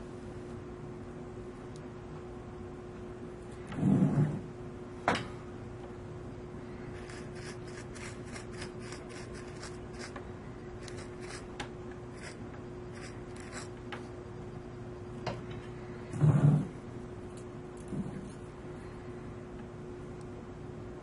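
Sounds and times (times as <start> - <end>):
low electrical hum: 0.0 - 21.0
scratching sounds: 6.9 - 10.2, 10.8 - 13.8.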